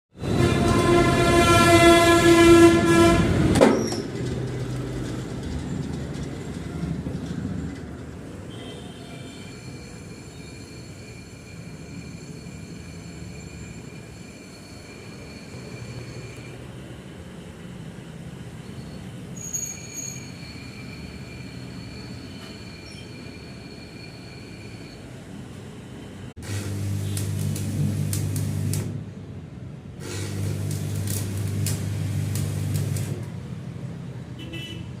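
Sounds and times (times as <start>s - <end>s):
loud horn blast: 0.2s - 3.6s.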